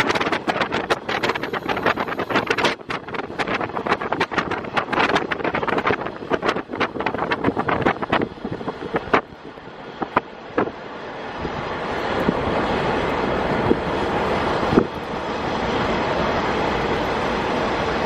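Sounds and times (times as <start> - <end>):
wheels clicking over rail joints: 0.0 - 9.3
railcar diesel engine running: 0.0 - 18.0.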